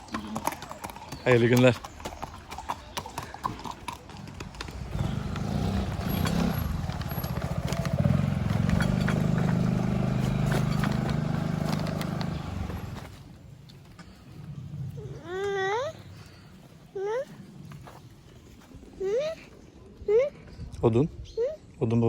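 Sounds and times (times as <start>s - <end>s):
vehicle engine passing by: 4.7s - 13.2s.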